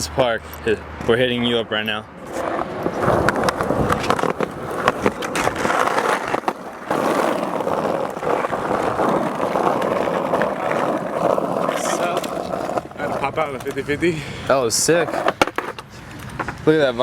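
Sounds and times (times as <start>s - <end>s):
skateboard wheels rolling on concrete: 0.0s - 17.0s
skateboard clacks and knocks: 2.3s - 13.8s, 15.0s - 16.6s.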